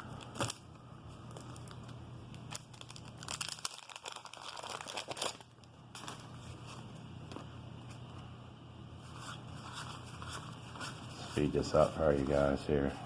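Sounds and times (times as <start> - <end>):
wax paper wrapper crinkling: 0.2 - 7.4.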